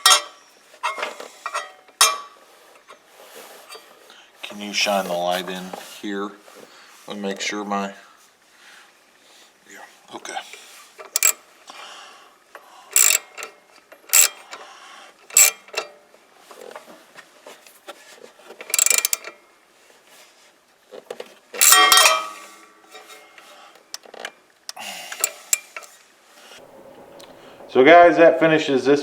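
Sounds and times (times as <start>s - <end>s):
socket wrench clicking: 11.2s - 11.4s, 13.0s - 13.5s, 14.1s - 14.4s, 15.3s - 15.9s, 18.7s - 19.3s
metallic clatter: 21.6s - 23.4s.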